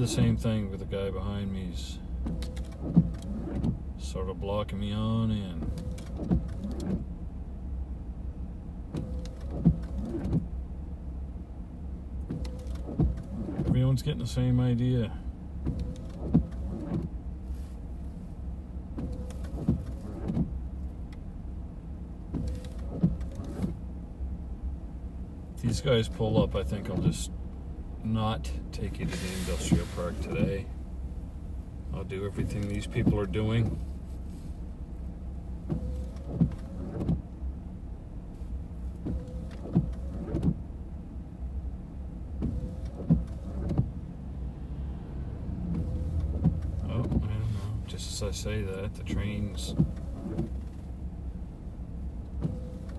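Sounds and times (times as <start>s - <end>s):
car engine idling: 0.0s - 52.9s.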